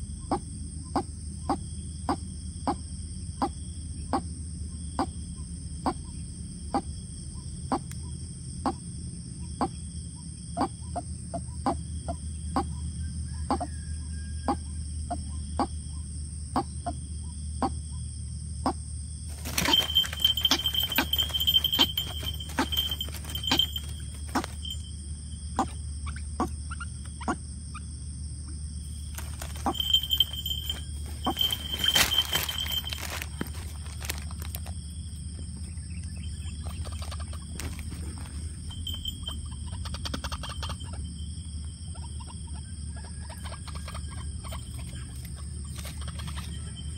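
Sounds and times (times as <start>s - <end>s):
waterhen calling: 19.3s - 24.8s
rustling and clatter: 19.3s - 24.9s, 28.8s - 35.7s, 36.4s - 39.3s.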